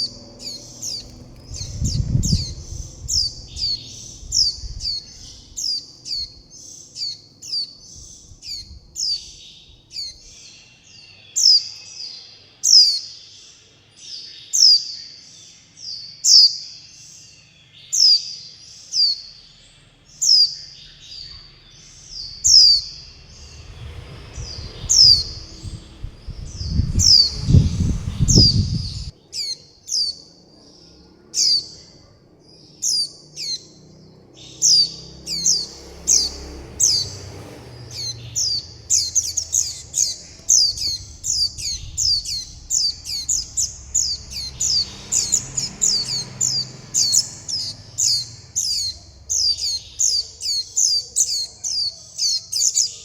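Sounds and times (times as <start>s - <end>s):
low rumble: 0.0s - 6.6s, 20.8s - 29.1s, 34.6s - 50.2s
young birds cheeping: 0.0s - 53.0s.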